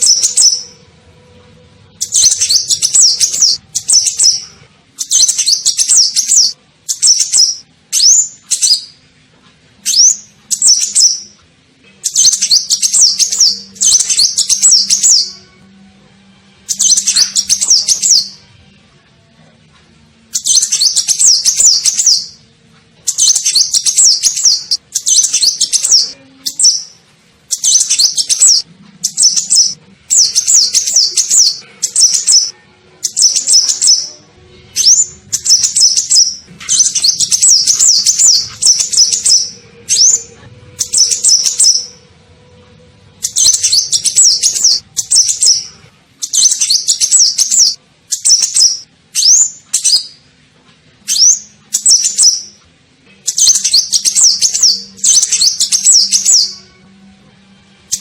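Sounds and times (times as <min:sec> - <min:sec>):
sunbird twittering chirps: 0:02.0 - 0:04.4, 0:20.4 - 0:22.4, 0:23.1 - 0:26.9.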